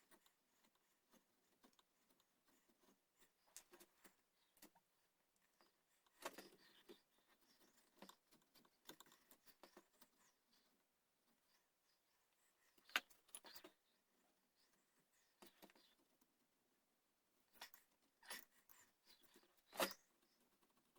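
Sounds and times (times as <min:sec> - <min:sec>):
clicks and scrapes on wood: 0:17.6 - 0:20.8.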